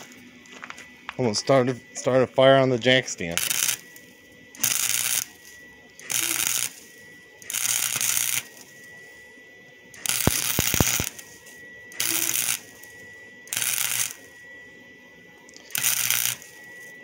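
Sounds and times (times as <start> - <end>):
welding arc crackling: 0.0 - 0.3, 2.8 - 9.2, 9.9 - 14.4, 15.4 - 17.0.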